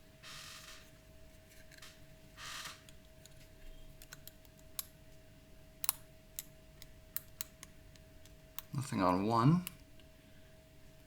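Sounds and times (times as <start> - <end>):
faint steady hum: 0.0 - 11.0
lock pick metallic clicks: 4.0 - 5.0, 5.8 - 8.8.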